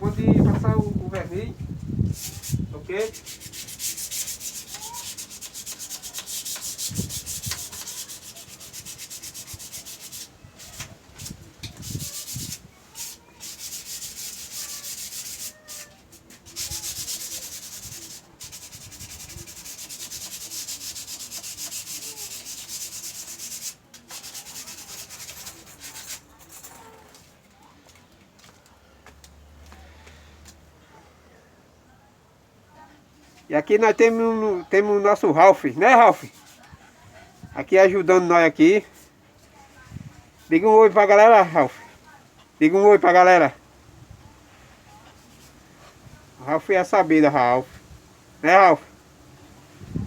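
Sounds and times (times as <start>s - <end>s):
sanding wood with sandpaper: 2.1s - 27.0s, 35.9s - 36.8s.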